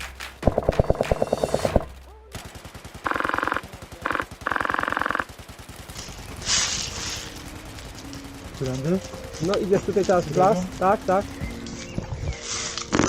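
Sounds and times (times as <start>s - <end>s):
airsoft gun rattling bursts: 0.0s - 13.0s
short hiss: 6.4s - 7.4s.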